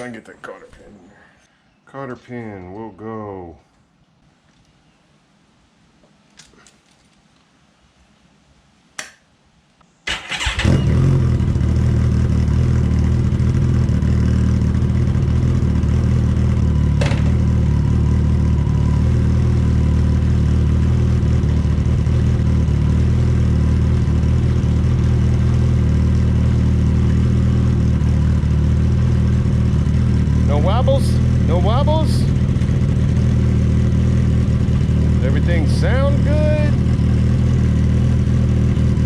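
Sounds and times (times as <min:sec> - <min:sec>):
motorcycle engine starting and idling: 0:10.1 - 0:39.0.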